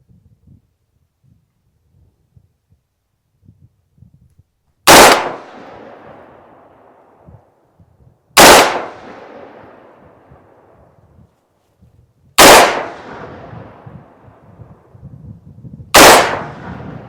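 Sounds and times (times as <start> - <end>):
rifle shots with echo: 4.9 - 7.1, 8.4 - 10.8, 12.4 - 14.3, 15.9 - 17.0.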